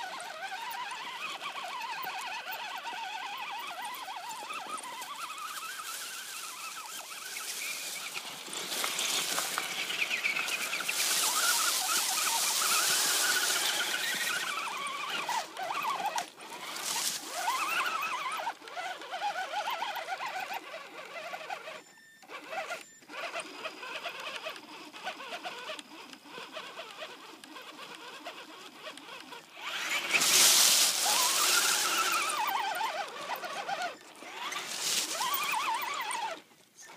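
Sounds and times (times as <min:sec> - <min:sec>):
electric motor whining: 0:00.0 - 0:36.9
tyres scrabbling on dirt: 0:00.0 - 0:36.9.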